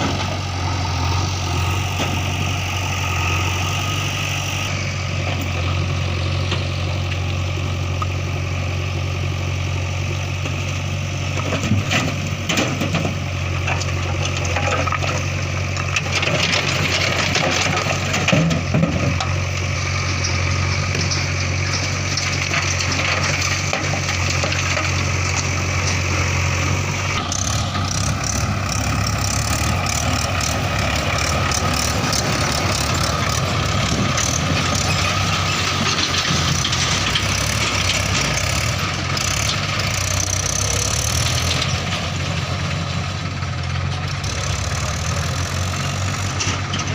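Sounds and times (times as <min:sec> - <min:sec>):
diesel engine running: 0:00.0 - 0:46.9
knocks and clatters: 0:11.4 - 0:19.4.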